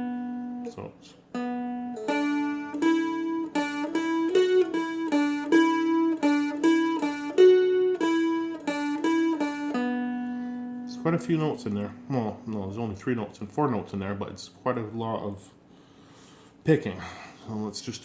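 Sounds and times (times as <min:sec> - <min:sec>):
flatpicked string instrument: 0:00.0 - 0:13.8.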